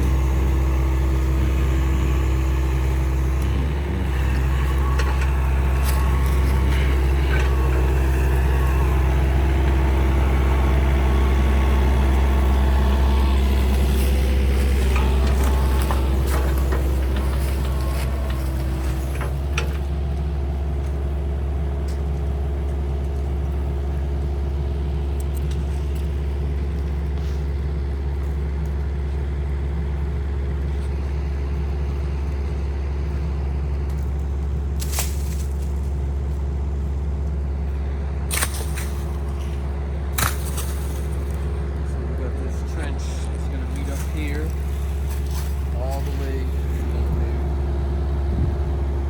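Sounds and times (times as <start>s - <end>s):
excavator engine running: 0.0s - 49.0s.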